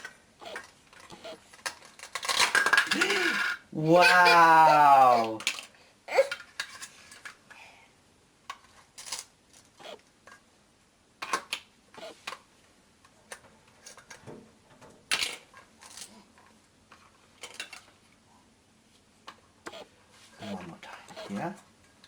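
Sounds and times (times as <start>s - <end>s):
toy pieces clicking and clattering: 0.0s - 4.4s, 5.2s - 7.4s, 8.5s - 9.7s.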